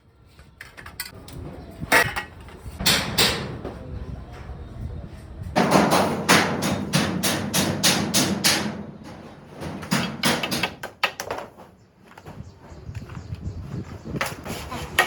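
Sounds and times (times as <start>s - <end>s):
sharp knocks: 5.6s - 11.6s.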